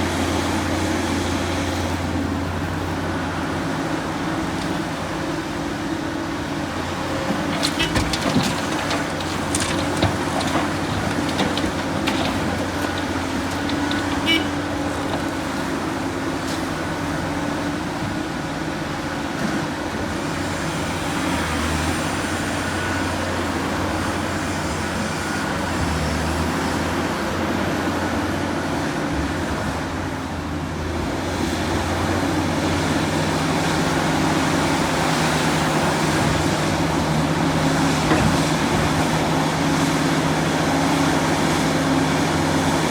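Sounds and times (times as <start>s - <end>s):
excavator diesel engine running: 0.0s - 17.6s.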